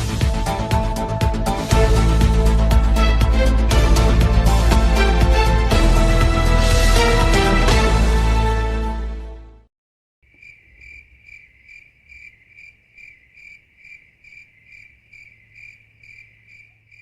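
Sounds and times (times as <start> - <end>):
background music: 0.0 - 9.7
cricket-like chirping: 10.3 - 17.0.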